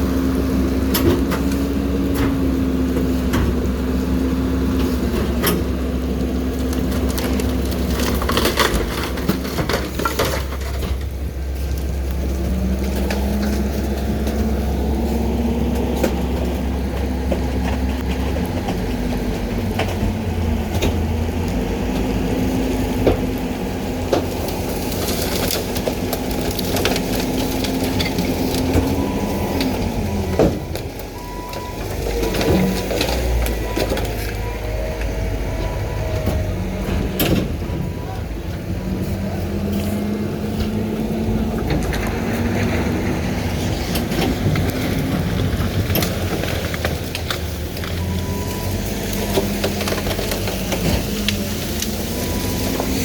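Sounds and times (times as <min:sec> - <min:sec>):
hydraulic packer whine: 0:00.0 - 0:53.0
truck engine running: 0:00.0 - 0:53.0
material cracking and snapping: 0:24.1 - 0:34.4.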